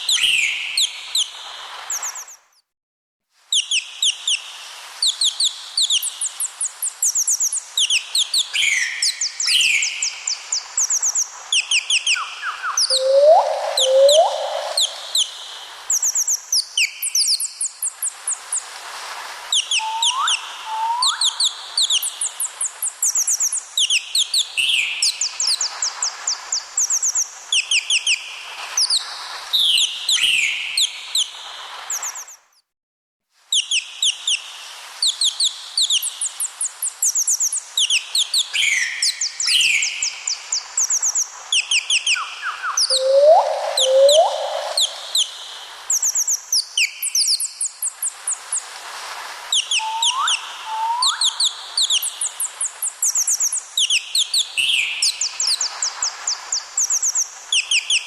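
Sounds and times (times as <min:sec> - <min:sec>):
small birds chirping: 0:00.0 - 0:02.7, 0:03.5 - 0:18.8, 0:19.5 - 0:32.7, 0:33.5 - 0:48.7, 0:49.5 - 0:58.0
short rising whistles: 0:19.6 - 0:21.5, 0:42.4 - 0:45.2, 0:49.6 - 0:51.5.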